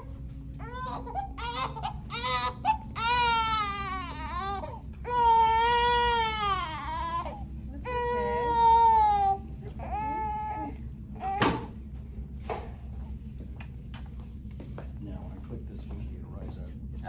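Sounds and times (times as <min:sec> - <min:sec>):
infant crying: 0:00.6 - 0:11.7.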